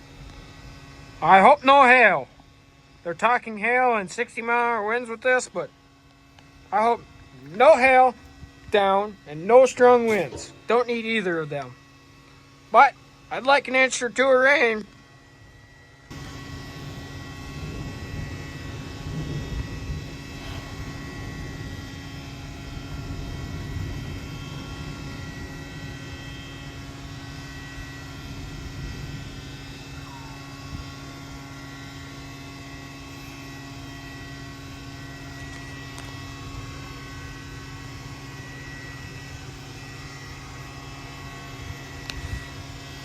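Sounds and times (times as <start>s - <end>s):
electrical hum: 0.0s - 43.0s
low rumbling noise: 6.5s - 12.2s.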